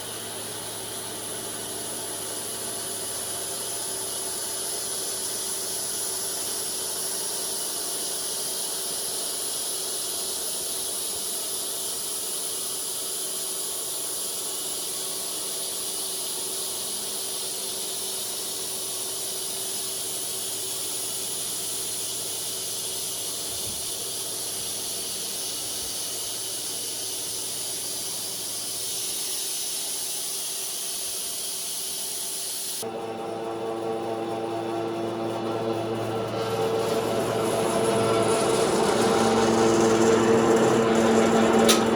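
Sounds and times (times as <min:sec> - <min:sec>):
low motor hum: 0:00.0 - 0:07.4, 0:32.8 - 0:41.9
band sawmill hiss: 0:00.0 - 0:41.9.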